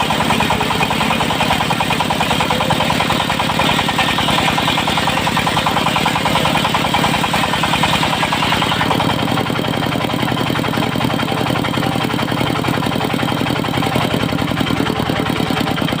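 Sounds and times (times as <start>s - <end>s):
harsh high-pitched saw sound: 0.0s - 10.3s
diesel engine running: 0.0s - 16.0s.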